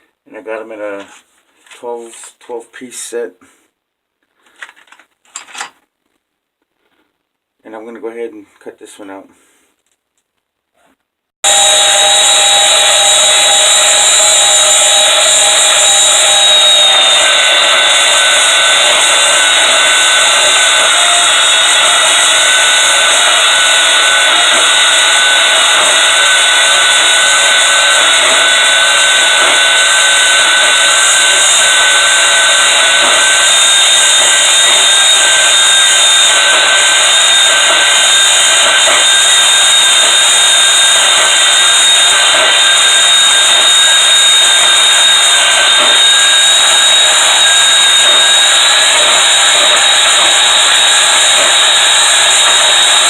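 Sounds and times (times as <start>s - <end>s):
power tool cutting steel: 11.4s - 53.0s.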